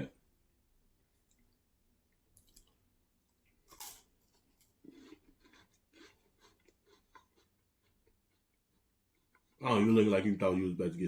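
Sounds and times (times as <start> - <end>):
crunching of wafer chewing: 2.4 - 9.6.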